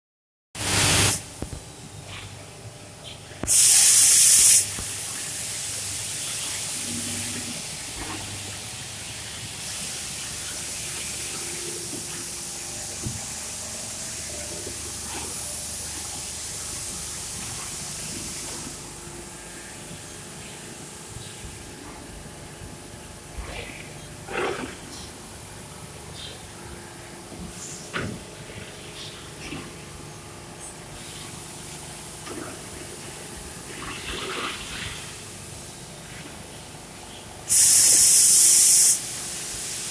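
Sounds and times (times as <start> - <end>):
machine blasting air: 0.6 - 1.4, 3.4 - 5.9, 37.5 - 39.9
machine hissing air: 0.6 - 1.5, 3.4 - 8.2, 8.9 - 20.1, 37.5 - 39.9.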